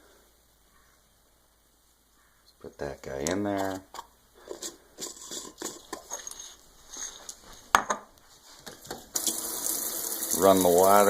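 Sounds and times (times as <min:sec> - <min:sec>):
kitchen tap running: 0:09.1 - 0:11.0.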